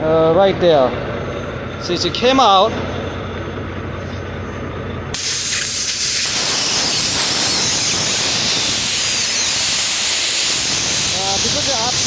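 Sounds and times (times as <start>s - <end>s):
air hissing from a tire: 5.1s - 12.0s.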